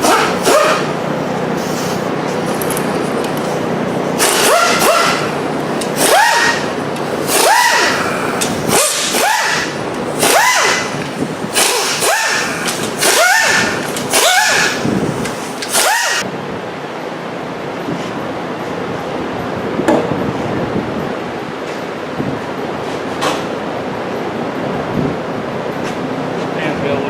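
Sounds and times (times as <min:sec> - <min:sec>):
power tool motor whine: 0:04.2 - 0:16.2.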